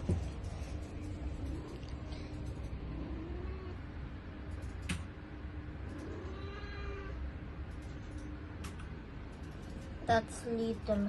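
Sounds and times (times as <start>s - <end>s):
cat meowing: 6.0s - 7.2s.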